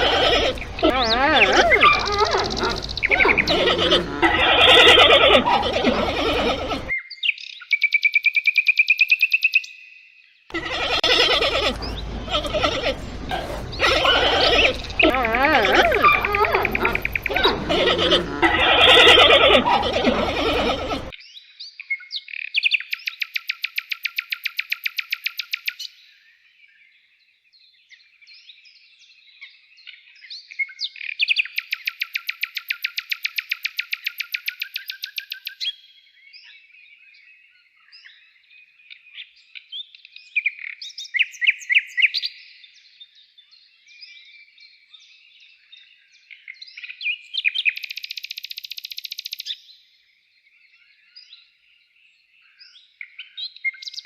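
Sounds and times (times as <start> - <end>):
bird chirps: 0.0 - 9.8, 10.5 - 26.0, 44.9 - 49.8.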